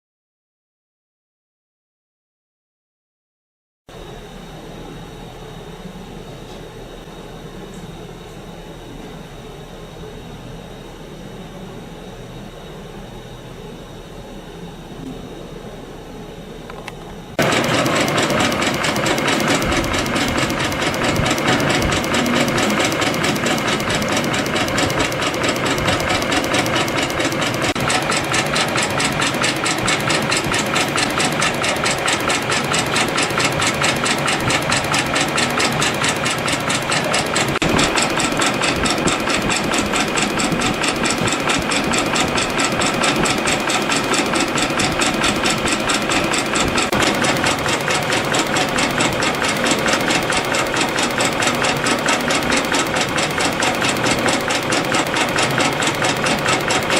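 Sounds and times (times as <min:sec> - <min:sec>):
spring coiling machine running: 0:17.3 - 0:56.9.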